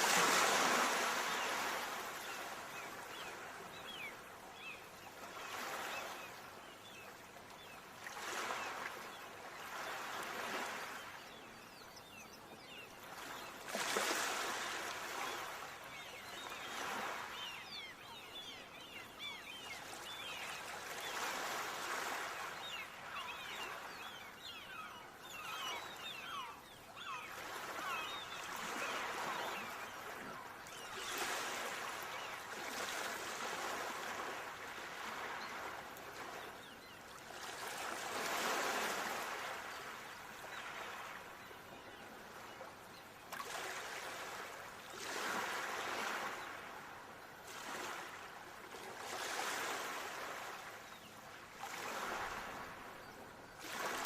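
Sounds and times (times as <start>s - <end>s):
ocean waves washing onto shore: 0.0s - 4.0s.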